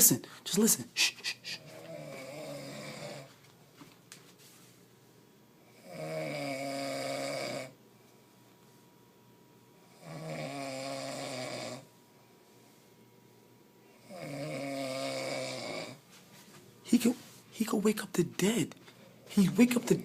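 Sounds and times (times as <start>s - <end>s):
man snoring: 1.4s - 3.3s, 5.7s - 7.8s, 9.8s - 11.9s, 13.9s - 16.0s.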